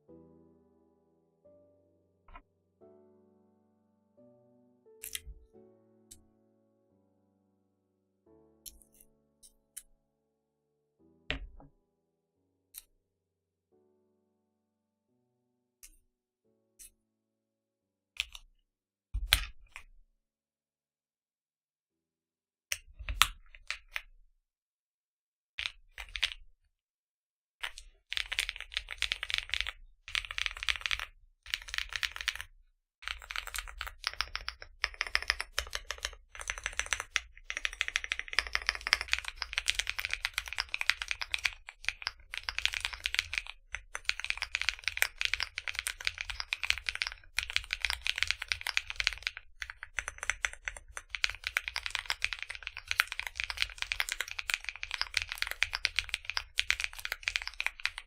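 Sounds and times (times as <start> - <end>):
keyboard typing: 5.0 - 5.5, 25.6 - 26.4, 27.6 - 58.0.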